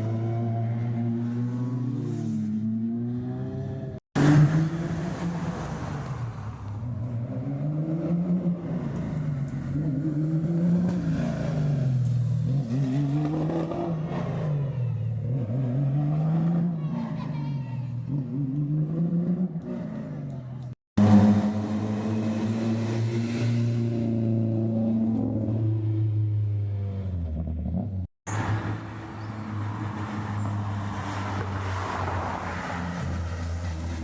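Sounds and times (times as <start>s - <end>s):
rally car engine revving: 18.1s - 28.6s.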